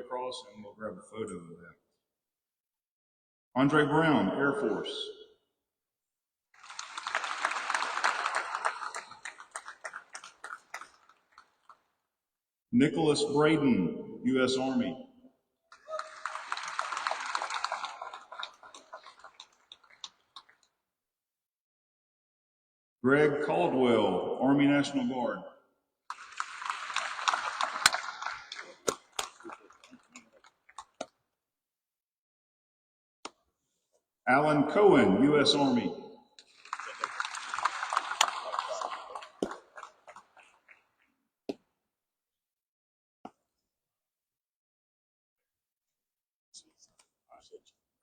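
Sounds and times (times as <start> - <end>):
audience applauding: 6.6 - 11.8, 15.7 - 20.6, 26.1 - 31.1, 36.4 - 41.0.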